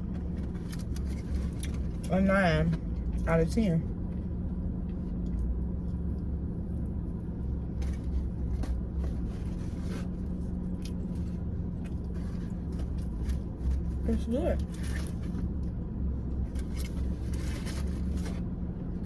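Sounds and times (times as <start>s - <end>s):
car engine idling: 0.0s - 19.0s
small clicks and rustles: 0.1s - 2.0s.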